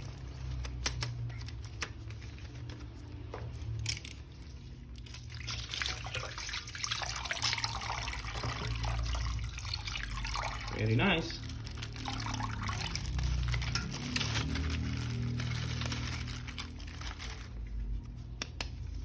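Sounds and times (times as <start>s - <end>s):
water splashing and trickling: 4.3s - 17.8s.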